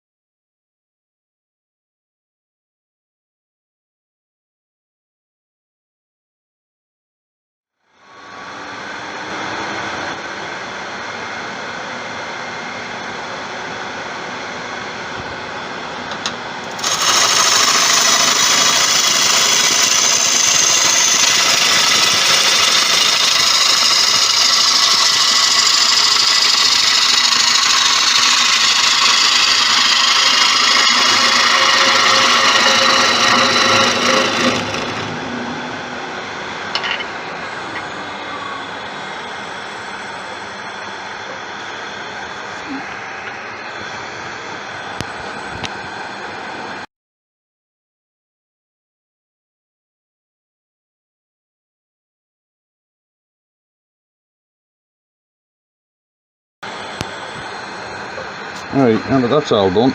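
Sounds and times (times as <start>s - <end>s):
wood lathe spinning: 16.1s - 45.9s, 56.7s - 59.9s
gouge cutting wood hiss: 16.7s - 35.1s.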